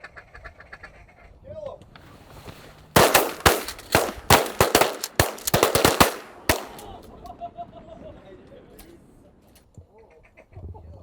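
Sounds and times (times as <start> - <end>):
shotgun blasts: 3.0 - 7.2.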